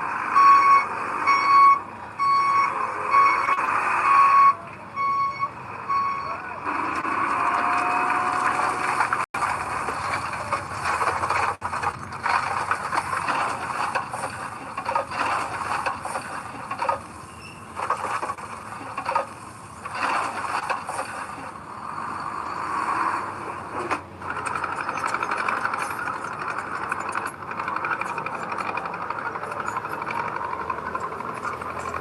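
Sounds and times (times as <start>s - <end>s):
earthmoving machinery scraping soil: 6.6s - 32.0s.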